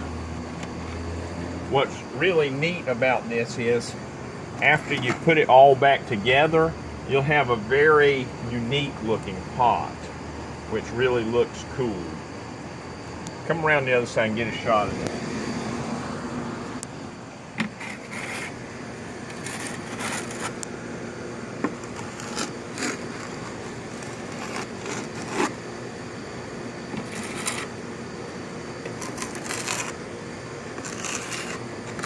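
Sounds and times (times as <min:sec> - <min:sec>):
steady background hum: 0:00.0 - 0:32.0
short scrapes and rustles: 0:17.6 - 0:18.6, 0:19.3 - 0:20.6, 0:27.0 - 0:27.8, 0:30.8 - 0:32.0.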